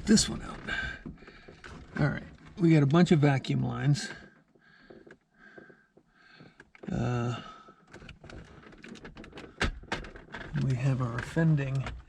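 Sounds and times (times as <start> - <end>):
plastic parts clicking and rattling: 7.6 - 12.0.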